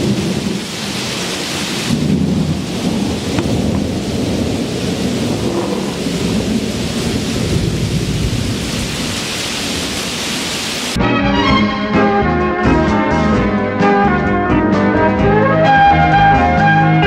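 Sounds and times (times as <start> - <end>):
heavy rain: 0.0 - 11.0
thunder rumbling: 0.0 - 11.0.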